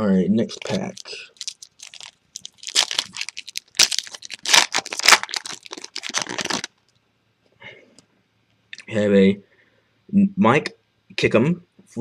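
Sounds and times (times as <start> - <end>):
foil wrapper tearing and crinkling: 0.5 - 6.8.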